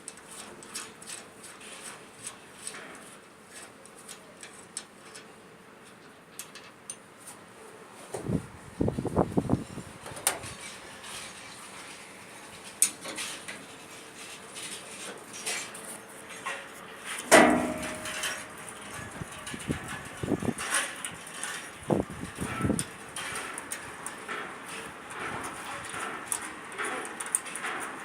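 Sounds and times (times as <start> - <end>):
loud ringing metal clank: 17.3 - 20.0.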